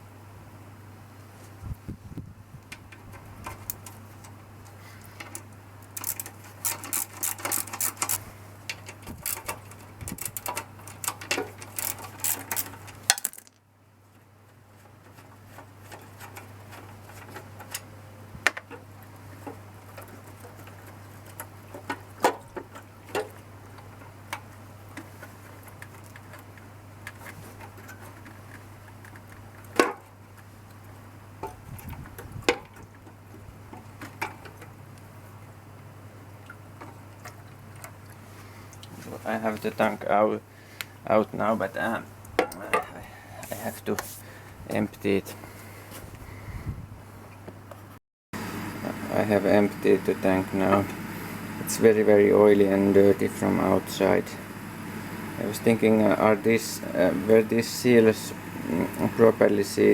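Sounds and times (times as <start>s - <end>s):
metal parts clicking and clattering: 5.2s - 13.6s
steady low hum: 48.4s - 59.9s.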